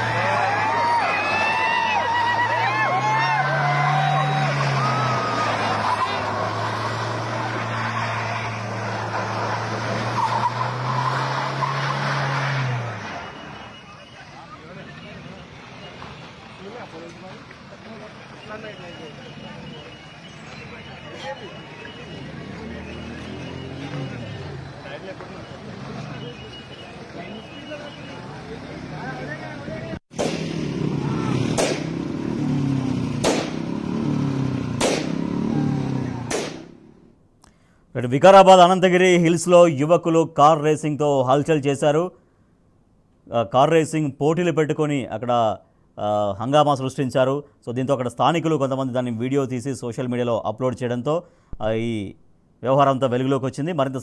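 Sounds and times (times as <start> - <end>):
car engine running hard: 0.0 - 37.0
tyres skidding and squealing: 0.0 - 37.2
air pistol shots: 30.1 - 30.6, 31.5 - 32.0, 33.2 - 33.6, 34.8 - 35.2, 36.3 - 36.8.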